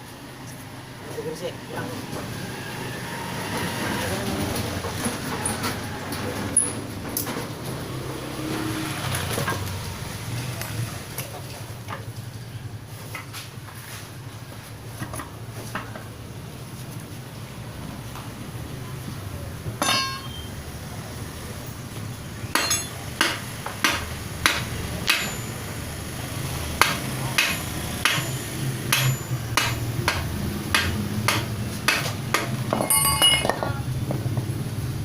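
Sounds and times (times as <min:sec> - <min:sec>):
hammer striking metal: 0:19.8 - 0:20.5, 0:22.5 - 0:25.7, 0:26.8 - 0:33.8.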